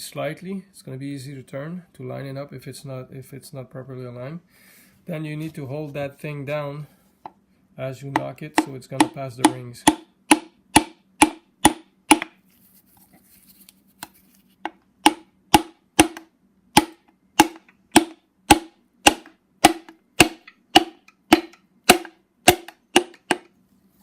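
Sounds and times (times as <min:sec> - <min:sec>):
sharp tapping on metal: 0:08.2 - 0:12.4, 0:15.0 - 0:23.5.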